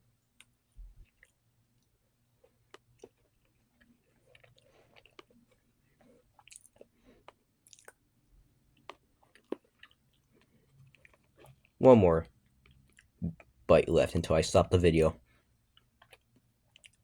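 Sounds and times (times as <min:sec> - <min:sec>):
faint chewing: 0:00.0 - 0:17.0
small mouth clicks: 0:06.4 - 0:08.0.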